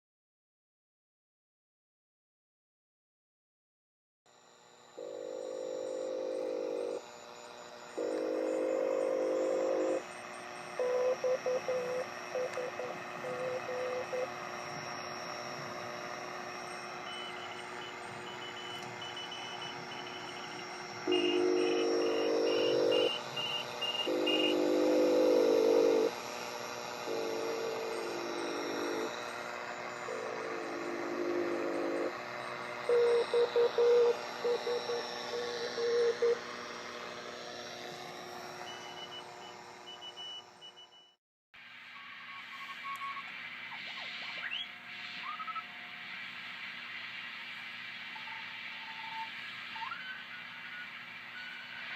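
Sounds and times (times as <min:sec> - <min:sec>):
radio receiver hiss: 0:05.0 - 0:40.1, 0:41.6 - 0:51.9
pitched radio tones: 0:05.0 - 0:41.2, 0:42.0 - 0:45.8.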